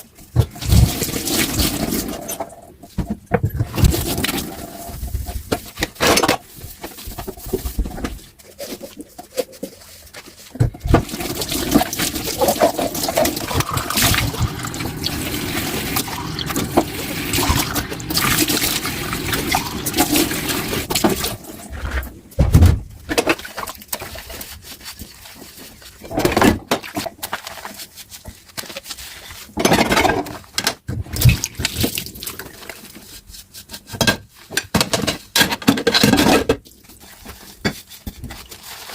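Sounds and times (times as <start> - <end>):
tap water running into sink: 11.0 - 21.4.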